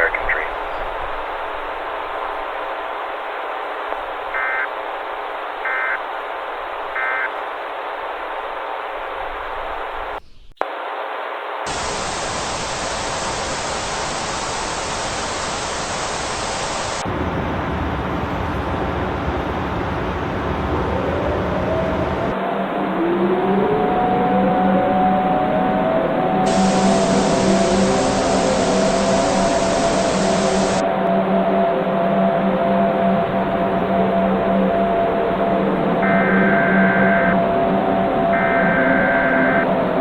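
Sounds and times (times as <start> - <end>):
broadcast static hiss: 0.0 - 17.1, 26.5 - 30.8, 36.0 - 37.4, 38.1 - 40.0
two-tone data bursts: 5.7 - 6.0, 7.0 - 7.3, 11.7 - 17.0, 26.5 - 30.8, 36.0 - 37.4, 38.3 - 39.8.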